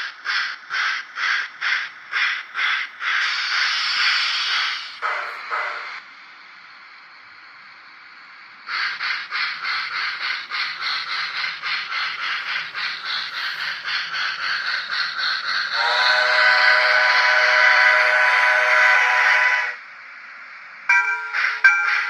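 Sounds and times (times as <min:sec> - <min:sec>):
soft steam hiss: 0:00.0 - 0:22.0
steam exhaust chuffs: 0:08.5 - 0:19.8
chime steam whistle: 0:15.8 - 0:19.8, 0:20.9 - 0:22.0.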